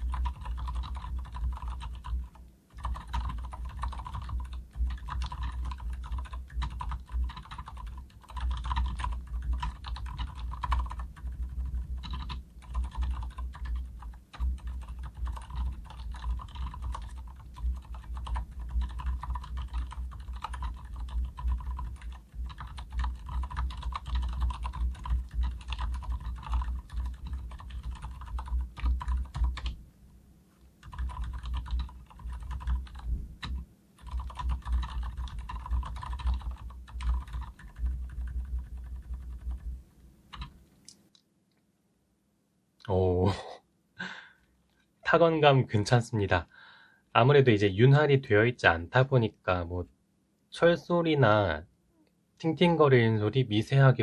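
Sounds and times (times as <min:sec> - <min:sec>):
fast typing on keyboard: 0:00.0 - 0:29.8, 0:30.8 - 0:39.7, 0:40.3 - 0:40.6.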